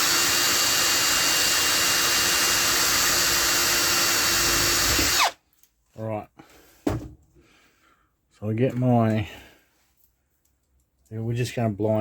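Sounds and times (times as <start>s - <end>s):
electric drill whining: 0.0s - 5.4s.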